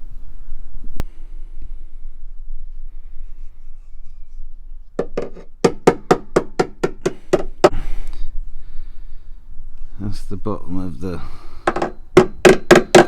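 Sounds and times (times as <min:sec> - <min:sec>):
sharp knocks: 0:05.0 - 0:07.8, 0:11.7 - 0:13.0.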